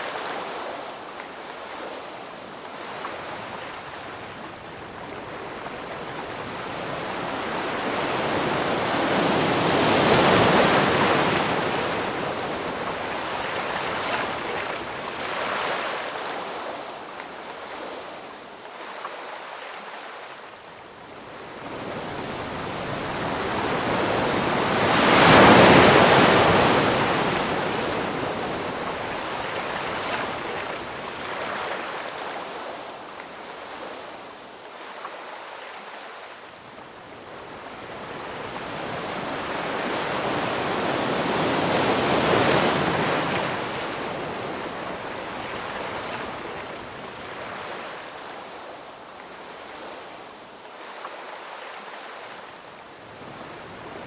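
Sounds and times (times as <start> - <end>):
ocean waves crashing on shore: 0.0 - 54.0.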